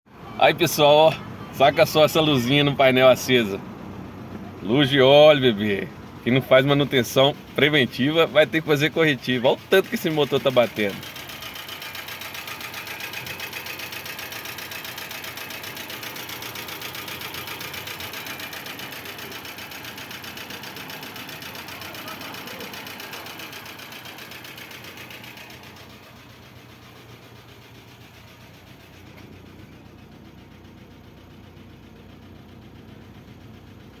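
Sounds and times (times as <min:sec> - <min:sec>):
car engine idling with heavy knock: 0:00.1 - 0:34.0.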